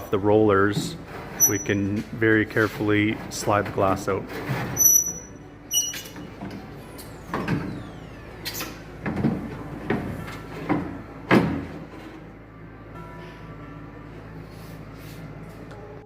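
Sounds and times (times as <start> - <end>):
glass scraping against steel door: 1.0 - 6.4.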